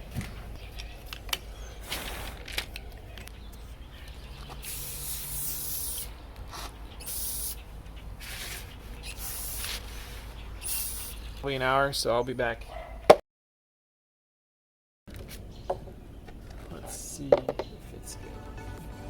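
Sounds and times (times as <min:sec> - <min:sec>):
spray can hissing: 0:04.6 - 0:06.1, 0:07.0 - 0:07.6, 0:09.1 - 0:09.8, 0:10.6 - 0:11.2.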